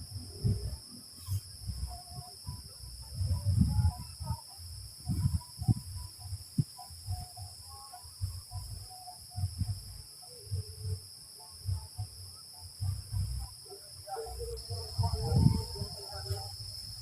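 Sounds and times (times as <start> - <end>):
wind buffeting microphone: 0.0 - 7.4, 14.4 - 17.0
high-pitched insect drone: 0.0 - 17.0.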